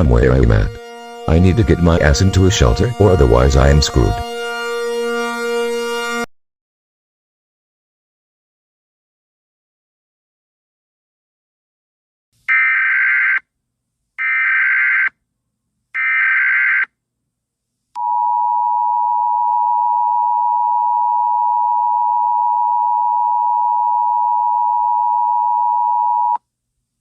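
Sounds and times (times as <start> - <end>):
two-tone attention signal: 0.0 - 6.3.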